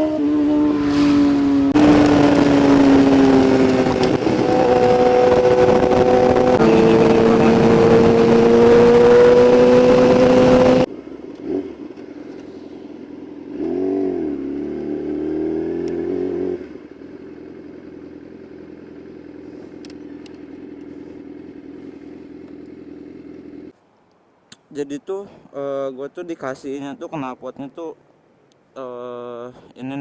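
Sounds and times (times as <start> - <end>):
motorcycle engine running: 0.0 - 23.7.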